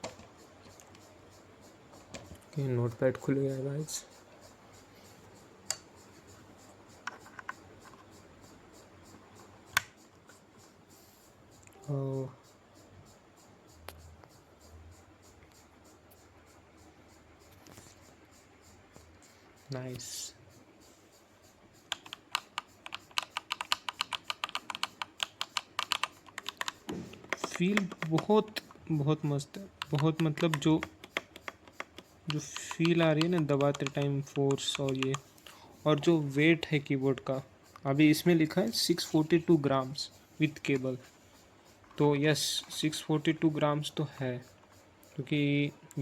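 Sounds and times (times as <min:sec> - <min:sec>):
mechanical keyboard key clicks: 0:21.9 - 0:28.3, 0:29.8 - 0:35.2.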